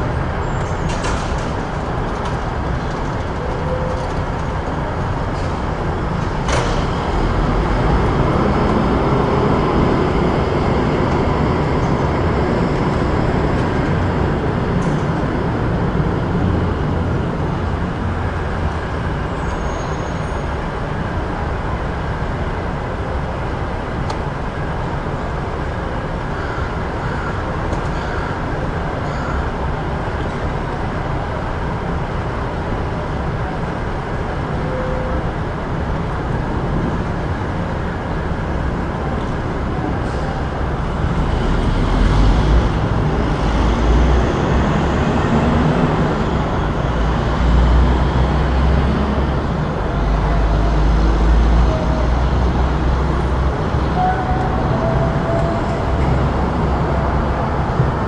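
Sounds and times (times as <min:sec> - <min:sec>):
road noise from passing vehicles: 0:00.0 - 0:58.0.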